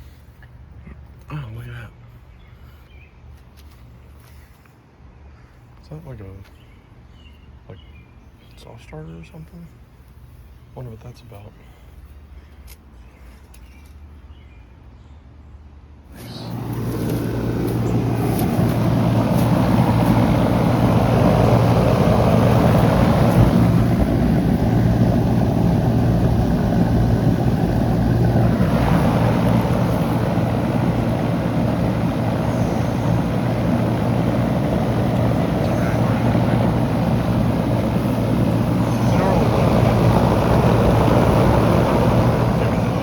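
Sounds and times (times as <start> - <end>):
condenser fan noise: 15.9 - 43.0
compressor low hum: 16.0 - 43.0.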